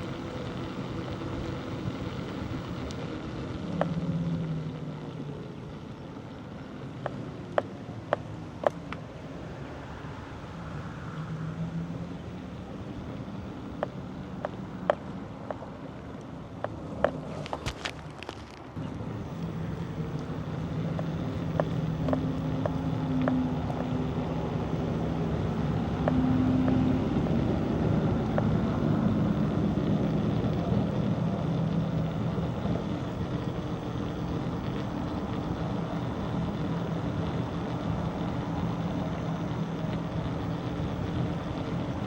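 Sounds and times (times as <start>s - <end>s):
motor humming: 0.0s - 42.0s
wind: 0.0s - 42.0s
rolling noise: 11.8s - 42.0s.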